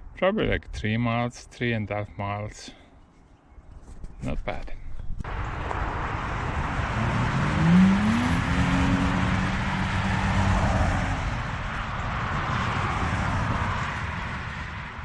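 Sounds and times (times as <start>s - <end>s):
vehicle engine rising in pitch: 5.3s - 14.2s.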